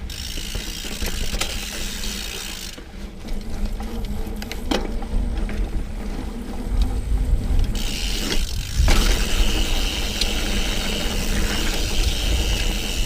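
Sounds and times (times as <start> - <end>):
bicycle freewheel ratcheting: 0.0 - 4.8, 5.4 - 13.0
tyres rumbling on trail: 0.0 - 13.0.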